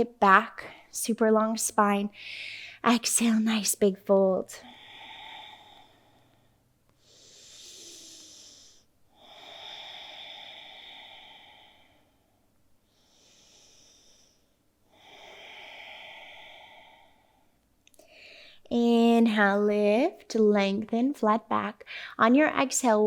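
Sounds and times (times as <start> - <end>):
person breathing slowly: 2.1 - 2.8, 4.6 - 18.6.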